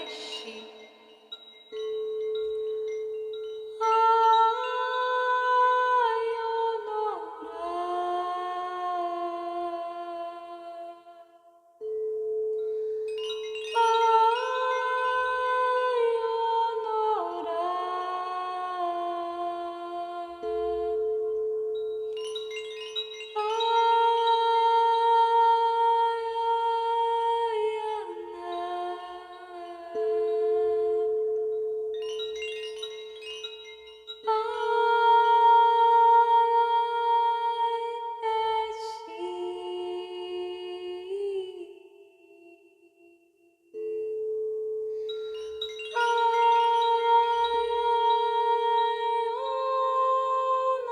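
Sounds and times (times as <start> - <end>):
wordless vocal drone: 0.0 - 1.2
person singing a chant: 13.8 - 21.4, 23.4 - 31.4, 34.3 - 42.7, 45.9 - 50.9.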